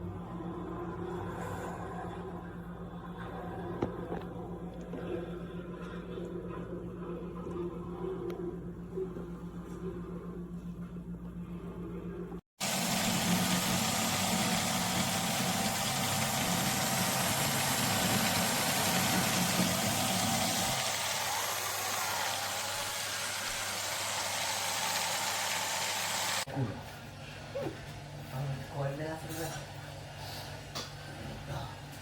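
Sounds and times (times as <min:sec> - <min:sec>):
low motor hum: 0:00.0 - 0:26.5
blender blades whirring: 0:12.6 - 0:26.5.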